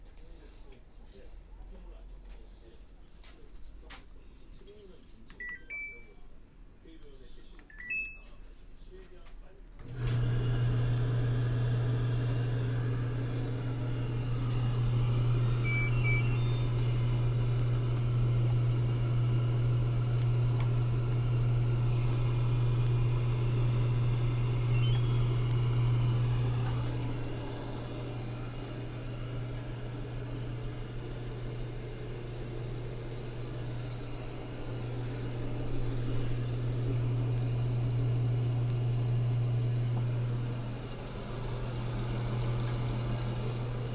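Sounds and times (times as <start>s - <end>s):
laundry machine motor hum: 9.8s - 43.9s.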